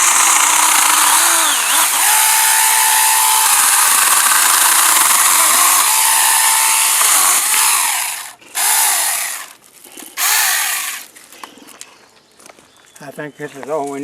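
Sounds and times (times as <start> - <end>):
mini chainsaw cutting wood: 0.0 - 9.6, 10.2 - 11.1.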